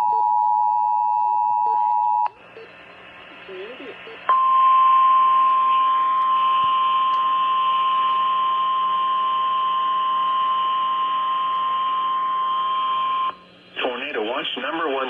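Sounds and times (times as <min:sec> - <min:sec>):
steady warning alarm tone: 0:04.1 - 0:13.5.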